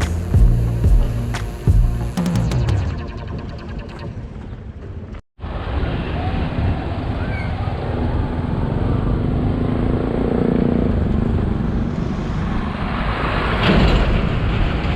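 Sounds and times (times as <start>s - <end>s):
road traffic rumble: 0.0s - 2.8s
engine hum: 0.0s - 5.0s
rush of traffic noise: 5.4s - 14.9s.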